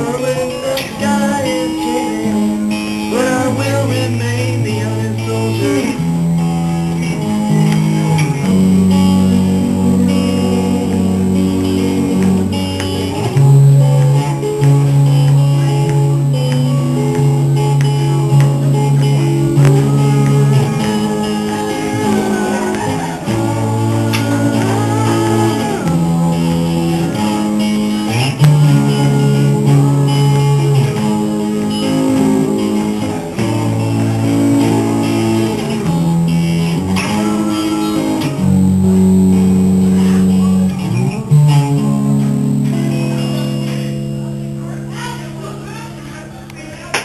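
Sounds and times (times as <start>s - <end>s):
man singing: 0.0s - 6.4s, 19.8s - 26.9s
guitar chords: 0.0s - 47.0s.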